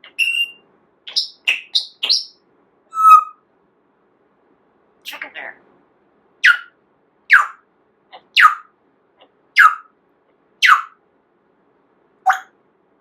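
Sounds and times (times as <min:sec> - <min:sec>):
parrot calling: 0:00.0 - 0:03.4, 0:06.4 - 0:07.6, 0:08.2 - 0:08.7, 0:09.6 - 0:09.9, 0:10.6 - 0:11.0.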